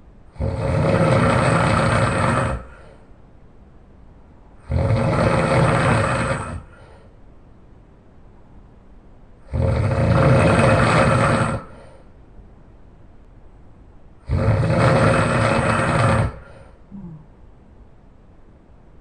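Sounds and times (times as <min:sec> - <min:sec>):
person snoring loudly: 0:00.3 - 0:03.0, 0:04.6 - 0:07.0, 0:09.5 - 0:12.0, 0:14.2 - 0:17.3.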